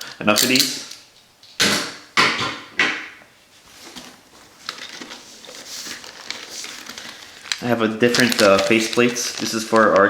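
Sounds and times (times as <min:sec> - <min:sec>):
rustling and light clicks: 0:03.7 - 0:10.0.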